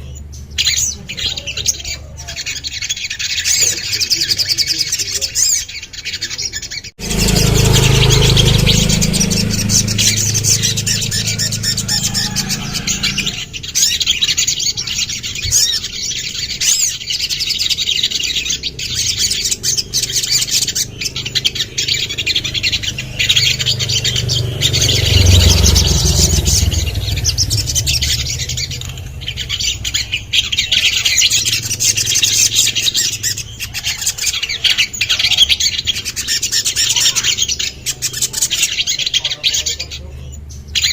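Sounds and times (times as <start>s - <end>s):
bird chirps and trills: 0.0s - 40.9s
low rumble: 7.0s - 14.0s, 18.8s - 33.6s.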